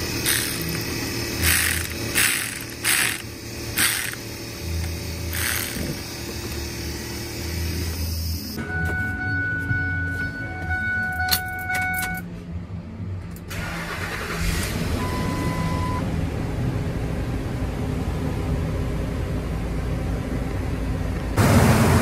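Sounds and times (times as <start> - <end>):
pickup engine starting: 13.5 - 16.0.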